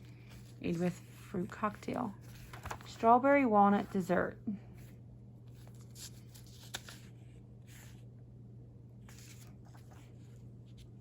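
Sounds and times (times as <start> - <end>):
paper pages rustling: 0.0 - 4.0, 5.5 - 8.0, 9.0 - 11.0
steady low hum: 0.0 - 11.0.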